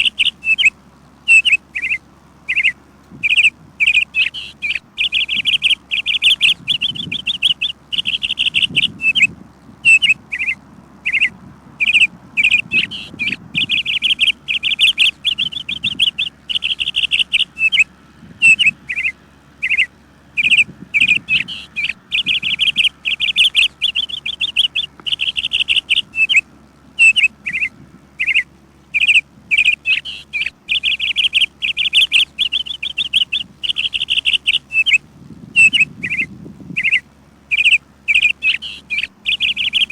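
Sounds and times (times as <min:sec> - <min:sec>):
songbird chirping: 0:00.0 - 0:39.9.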